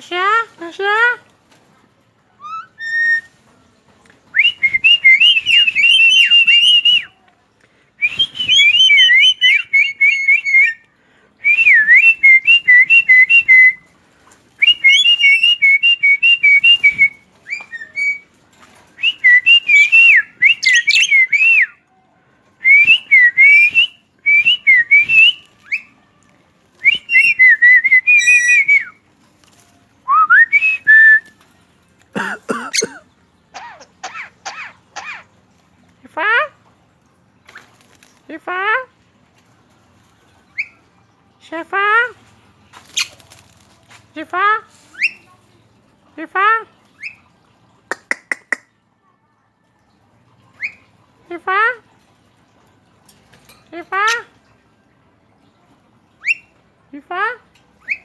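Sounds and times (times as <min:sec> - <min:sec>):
bird warbling and chattering: 0:20.5 - 0:21.1, 0:32.2 - 0:35.4, 0:53.8 - 0:54.4.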